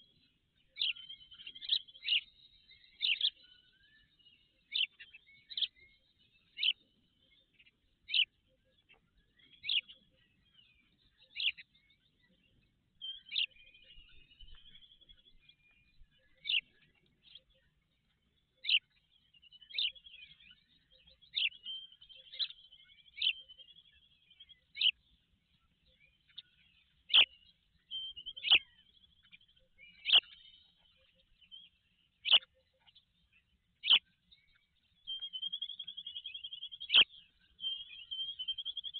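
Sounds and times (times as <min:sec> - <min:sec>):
bird sharp high calls: 0:00.0 - 0:06.9, 0:13.0 - 0:17.6, 0:18.6 - 0:25.1, 0:25.8 - 0:32.6, 0:33.3 - 0:38.9
bird twittering: 0:00.0 - 0:38.9.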